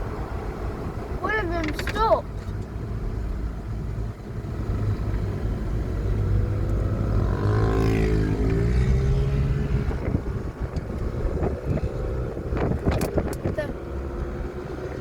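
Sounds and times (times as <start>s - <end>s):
traffic engine hum: 0.0s - 15.0s
vehicle passing: 4.4s - 15.0s.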